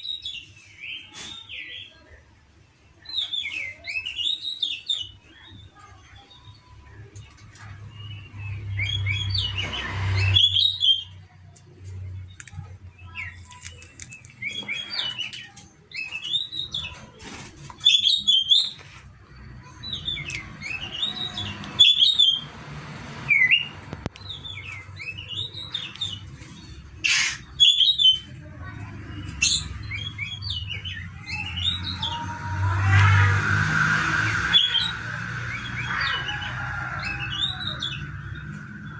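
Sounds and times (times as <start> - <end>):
bird chirping calls: 0.0 - 38.9.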